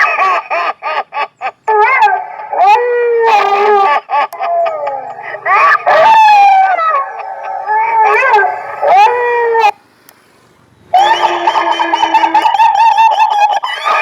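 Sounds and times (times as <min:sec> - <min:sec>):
car horn playing dog howl: 0:01.7 - 0:09.9, 0:10.8 - 0:14.0.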